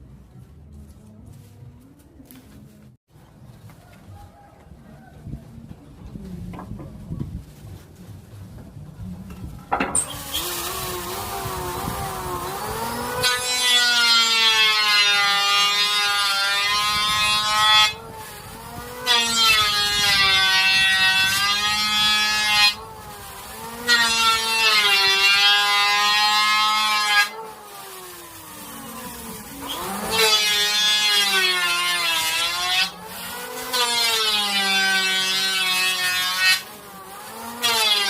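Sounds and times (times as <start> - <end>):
electric wood router whining: 10.0 - 38.0.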